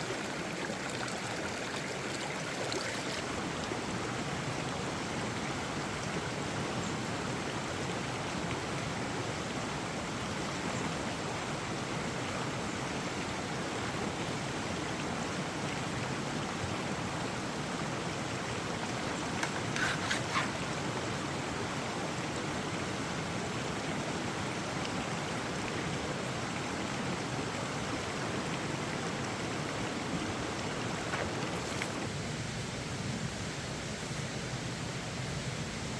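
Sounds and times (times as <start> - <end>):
mountain stream rushing: 0.0 - 35.9.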